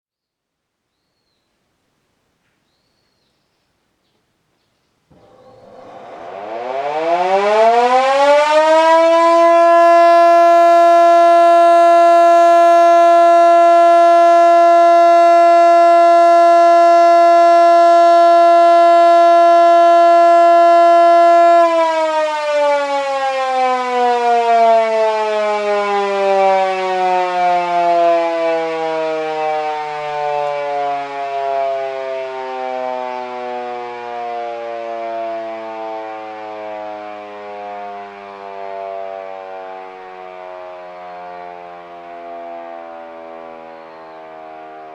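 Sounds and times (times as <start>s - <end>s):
motor siren wailing: 5.1s - 44.9s.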